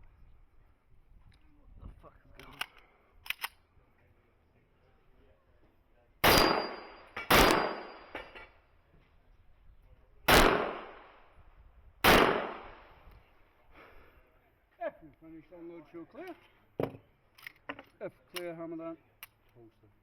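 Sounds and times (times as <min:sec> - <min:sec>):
handgun shots with echo: 0:06.2 - 0:08.3, 0:10.3 - 0:11.0, 0:12.0 - 0:12.8.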